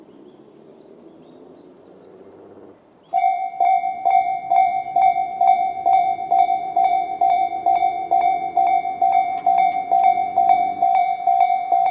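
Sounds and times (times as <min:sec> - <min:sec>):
electronic level-crossing bell: 0:03.1 - 0:11.9.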